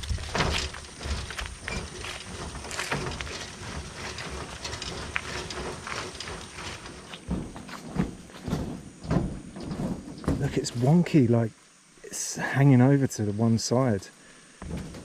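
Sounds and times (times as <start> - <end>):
footsteps on jungle path: 0.0 - 10.9
heavier thumps: 0.0 - 11.0, 14.6 - 15.0
insects droning: 0.0 - 15.0.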